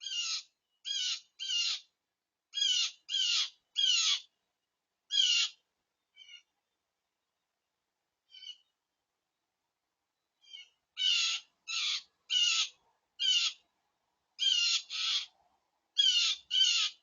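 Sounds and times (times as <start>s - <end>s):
bird giving harsh calls: 0.0s - 1.9s, 2.6s - 4.3s, 5.1s - 5.6s, 6.2s - 6.5s, 8.3s - 8.7s, 10.4s - 13.6s, 14.4s - 15.3s, 16.0s - 17.0s.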